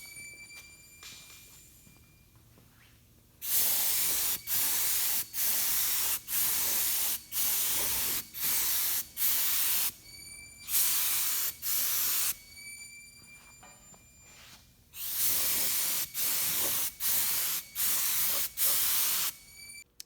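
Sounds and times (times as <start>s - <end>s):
spray gun hissing bursts: 3.4s - 10.0s, 10.7s - 12.4s, 15.0s - 19.6s.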